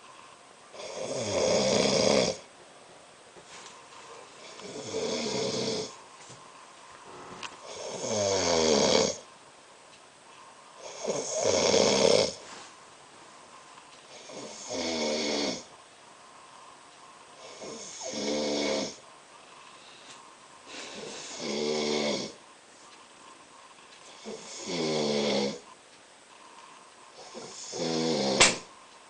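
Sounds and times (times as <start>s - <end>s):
man snoring: 0.7s - 2.5s, 4.4s - 6.0s, 7.1s - 9.3s, 10.8s - 12.4s, 14.1s - 15.7s, 17.4s - 19.0s, 20.7s - 22.4s, 24.1s - 25.7s, 27.2s - 28.6s
quiet breathing: 3.4s - 9.4s, 10.3s - 29.0s.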